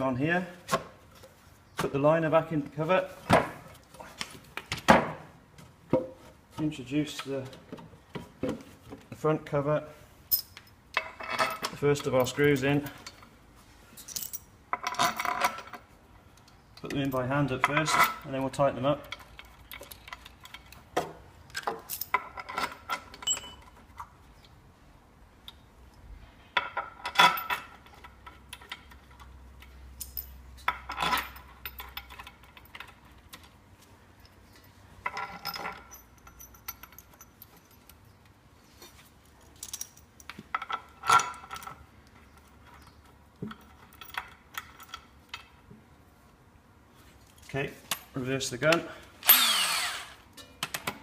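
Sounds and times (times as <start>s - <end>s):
metal bolts clinking on metal: 10.3s - 13.3s, 14.0s - 20.9s, 21.5s - 24.5s, 26.6s - 33.6s, 34.2s - 38.2s, 39.4s - 45.6s.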